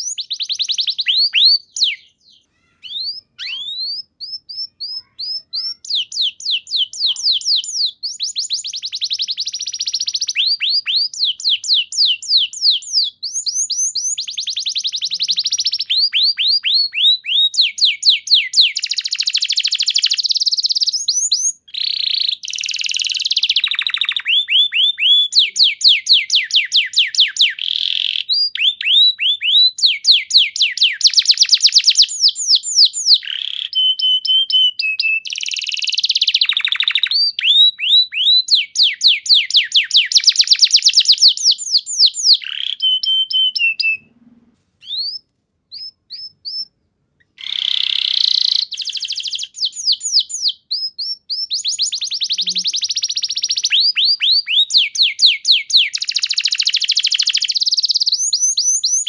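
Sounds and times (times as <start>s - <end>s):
canary singing trills: 0.0s - 44.2s, 44.8s - 59.0s.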